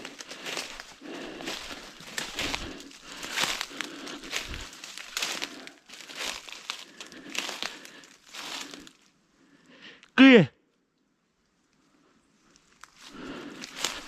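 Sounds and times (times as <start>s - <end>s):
footsteps crunching dry leaves: 0.0s - 9.1s, 12.8s - 14.0s.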